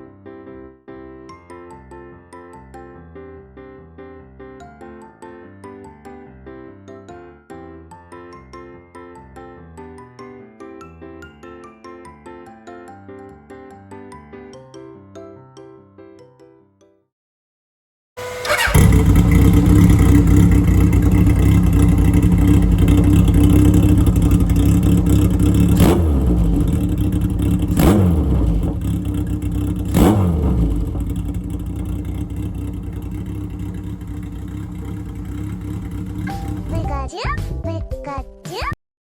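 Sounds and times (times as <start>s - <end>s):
motorcycle engine revving: 18.2s - 36.9s.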